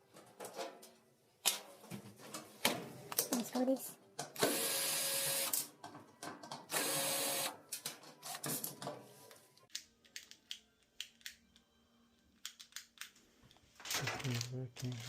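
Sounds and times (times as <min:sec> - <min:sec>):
power screwdriver running: 0:04.4 - 0:05.6, 0:06.7 - 0:07.5
small clicks and taps of parts: 0:09.7 - 0:11.4.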